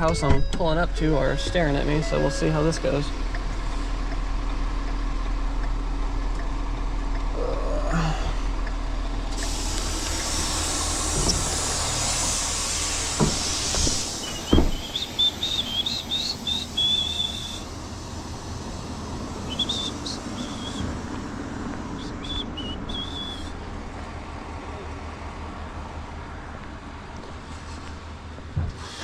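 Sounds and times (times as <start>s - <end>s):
high warbling whistle tones: 0.0s - 3.2s, 14.2s - 17.7s, 19.4s - 20.9s, 22.0s - 23.6s
truck engine idling: 0.0s - 29.0s
loud air hiss: 9.3s - 21.2s
sharp knock: 13.2s - 14.9s.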